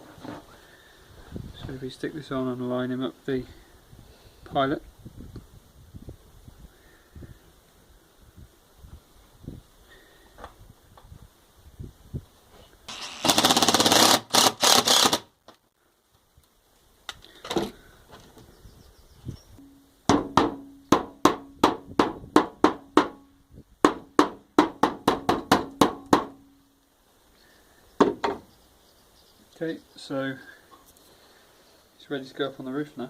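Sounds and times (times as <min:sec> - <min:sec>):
impact driver hammering: 0:12.9 - 0:15.2, 0:23.8 - 0:26.4.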